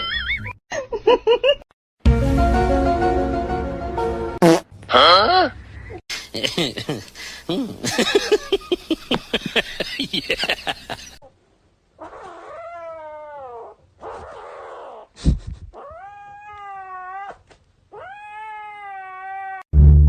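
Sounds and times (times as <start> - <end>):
cat yowling: 12.0 - 13.8, 15.8 - 19.7.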